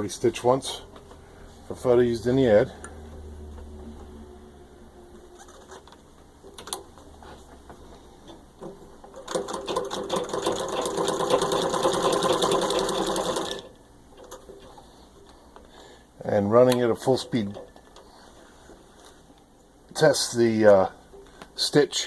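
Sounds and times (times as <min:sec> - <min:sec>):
treadle sewing machine stitching: 0:09.1 - 0:14.4.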